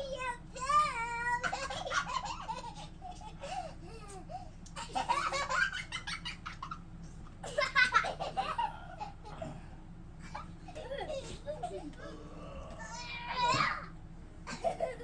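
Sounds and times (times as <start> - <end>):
children laughing: 1.2 - 9.6, 10.2 - 12.0, 14.5 - 15.0.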